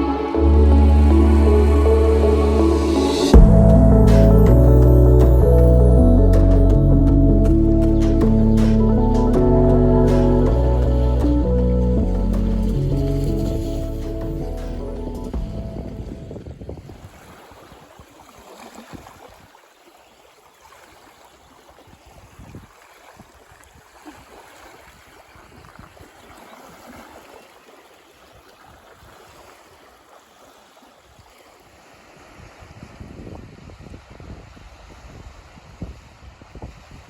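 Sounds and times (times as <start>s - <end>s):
wind rumbling on microphone: 0.0s - 18.0s, 32.3s - 37.0s
water rushing: 0.0s - 21.9s.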